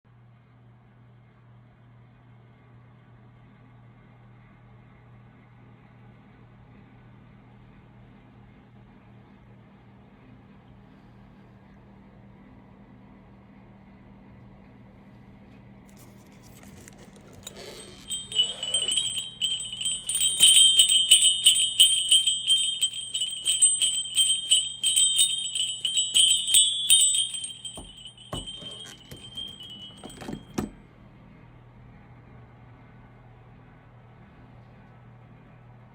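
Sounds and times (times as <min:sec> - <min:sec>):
sleigh bells jingling: 0:16.7 - 0:30.7.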